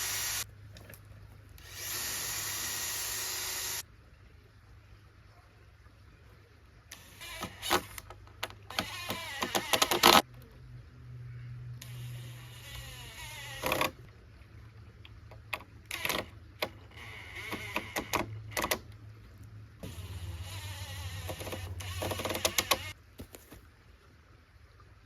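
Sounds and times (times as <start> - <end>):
cordless power drill running: 0.0 - 0.4, 1.6 - 3.8, 8.7 - 10.2, 11.9 - 14.0, 19.8 - 23.0.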